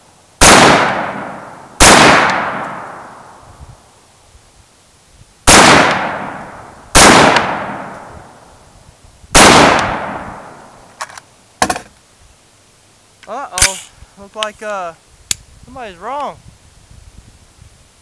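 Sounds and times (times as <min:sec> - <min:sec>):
rifle shots with echo: 0:00.4 - 0:03.3, 0:05.5 - 0:08.3, 0:09.3 - 0:10.7.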